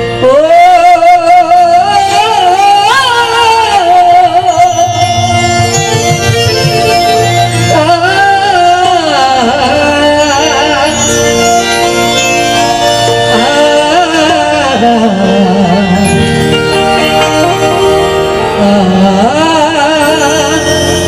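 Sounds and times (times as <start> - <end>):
woman singing devotional song: 0.0 - 5.0, 7.7 - 11.1, 13.3 - 16.2
sustained instrumental accompaniment: 0.0 - 21.0.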